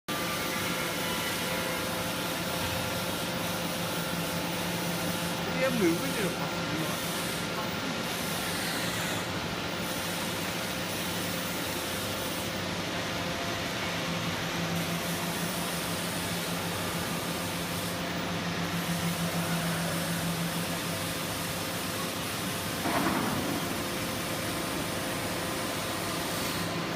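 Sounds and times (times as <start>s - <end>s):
baling machine running: 18.6s - 26.9s.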